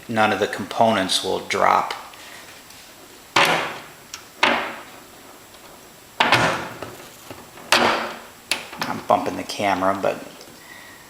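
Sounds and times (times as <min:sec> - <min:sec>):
sudden metal knocks: 0:03.4 - 0:05.0, 0:06.2 - 0:09.0.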